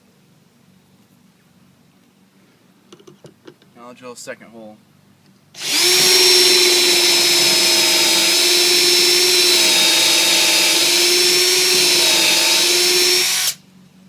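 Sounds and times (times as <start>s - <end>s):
cordless drill motor whining: 5.6s - 13.6s.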